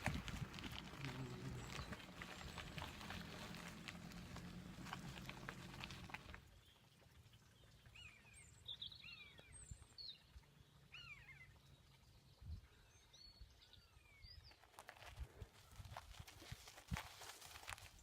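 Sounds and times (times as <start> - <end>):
low steady rumble: 0.0 - 8.6
faint bird chirps and whistles: 10.9 - 11.6.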